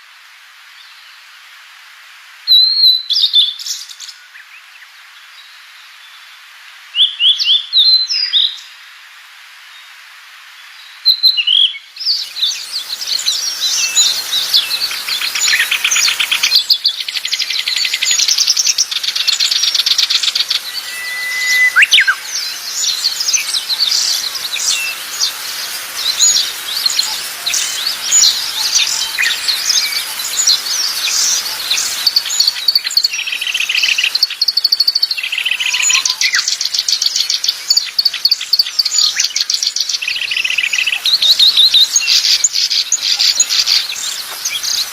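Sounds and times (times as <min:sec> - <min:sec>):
songbirds chirping and trilling: 0:10.5 - 0:44.9.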